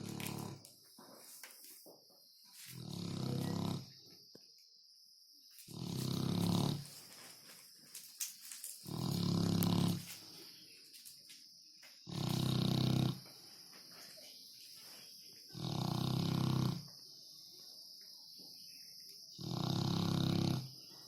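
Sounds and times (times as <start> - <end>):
dog snoring: 0.0 - 0.7, 2.7 - 4.0, 5.7 - 7.0, 8.8 - 10.2, 12.1 - 13.3, 15.5 - 16.9, 19.4 - 20.8.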